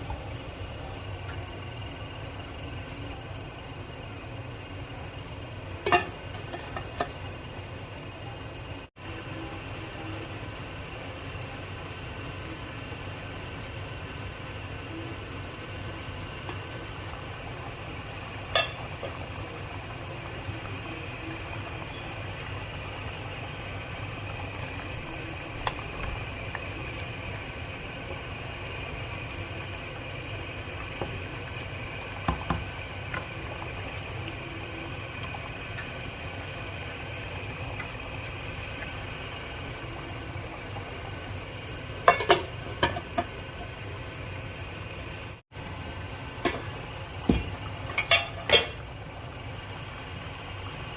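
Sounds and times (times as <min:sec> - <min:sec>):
hum and hiss of cooking: 0:00.0 - 0:50.9
spoon clinking against pot: 0:18.6 - 0:18.8, 0:48.0 - 0:48.8.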